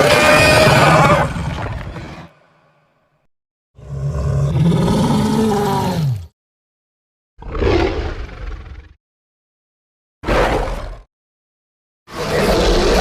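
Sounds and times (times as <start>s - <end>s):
creature roar rising and falling: 0.0s - 2.3s, 3.8s - 6.3s, 7.4s - 8.9s.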